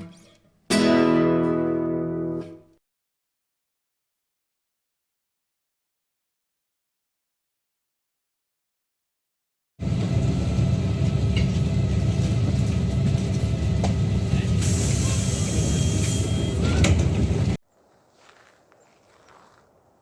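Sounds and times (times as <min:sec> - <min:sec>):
moving vehicle rumble: 0:09.8 - 0:20.0.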